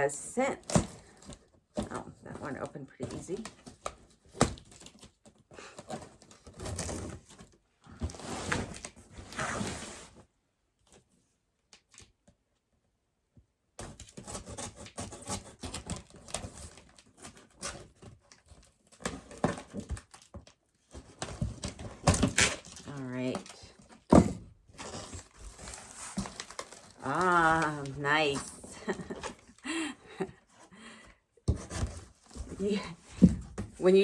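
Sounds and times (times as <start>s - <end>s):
packaging rustling and crinkling: 14.9s - 30.2s, 31.5s - 34.0s.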